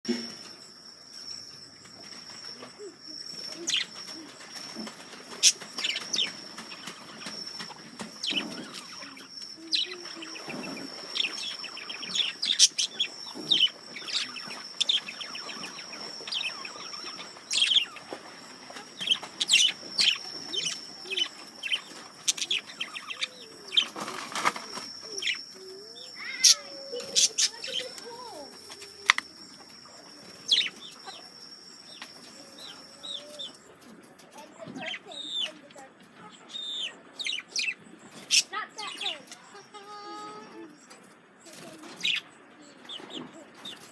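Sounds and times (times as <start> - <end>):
high-pitched whine: 0.1 - 33.8
budgerigars chattering: 3.2 - 31.3, 36.3 - 39.7.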